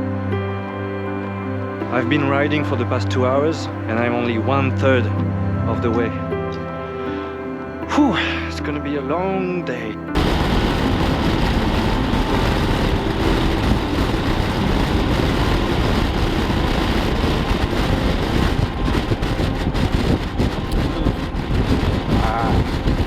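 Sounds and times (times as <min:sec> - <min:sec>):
wind rush on microphone: 0:10.0 - 0:23.0
road noise: 0:10.1 - 0:23.0
motorcycle engine cruising: 0:10.2 - 0:22.1.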